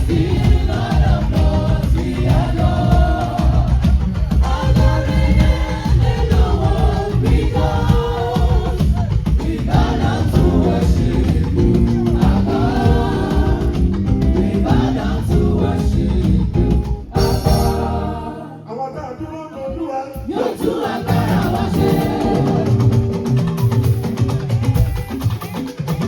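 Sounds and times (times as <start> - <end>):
steady drum beat: 0.0 - 18.4, 20.2 - 26.0
strong bass: 0.0 - 18.5
band accompaniment: 0.0 - 18.6, 20.2 - 26.0
choir singing: 0.0 - 23.4.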